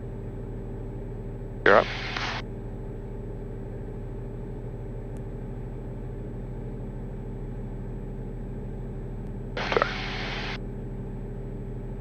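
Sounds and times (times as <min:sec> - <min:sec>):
aircraft piston engine drone: 0:01.7 - 0:02.4, 0:09.6 - 0:10.6.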